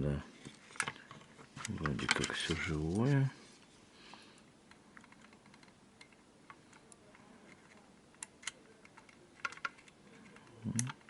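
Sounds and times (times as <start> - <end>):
light clicks and taps from handling: 0.4 - 3.2.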